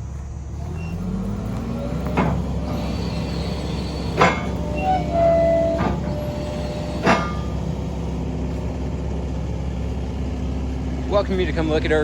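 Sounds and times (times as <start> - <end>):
excavator diesel engine running: 0.0 - 12.0
sharp metallic clanks: 0.6 - 11.4.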